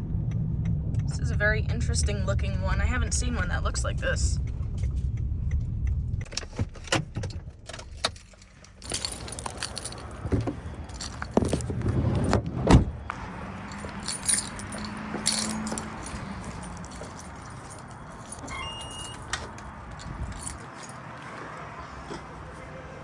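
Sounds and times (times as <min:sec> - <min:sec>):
keys jangling: 0:07.7 - 0:12.4, 0:13.2 - 0:21.4.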